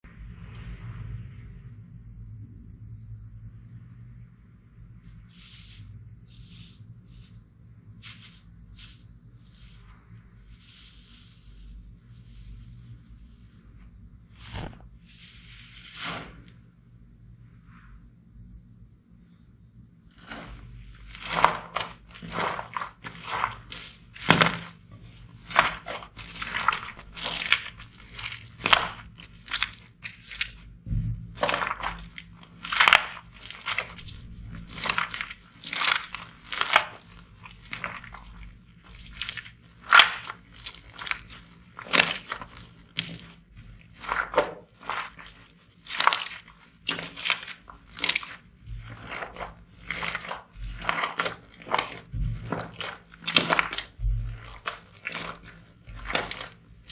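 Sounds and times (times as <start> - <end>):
slime crackling when squeezed: 31.4 - 43.3.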